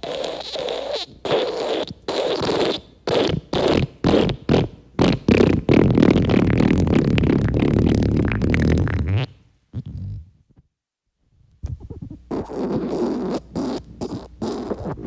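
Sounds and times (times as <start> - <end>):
cartoon wet fart sound effect: 5.0 - 10.2.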